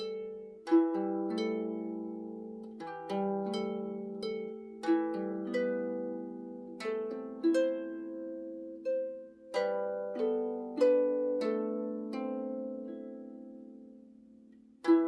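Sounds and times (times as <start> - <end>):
calm plucked harp melody: 0.0 - 15.0.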